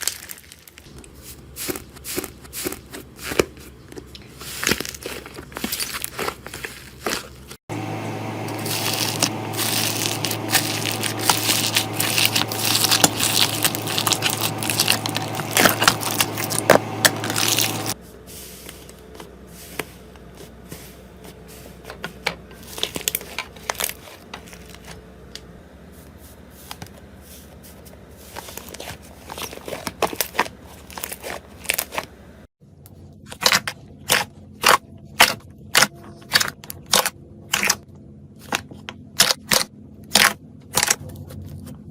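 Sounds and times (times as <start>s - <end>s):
slime crackling and popping: 8.6s - 18.0s.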